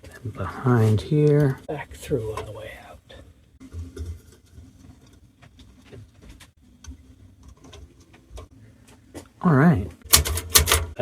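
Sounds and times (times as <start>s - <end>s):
typewriter mechanism clicks and taps: 10.1s - 11.0s.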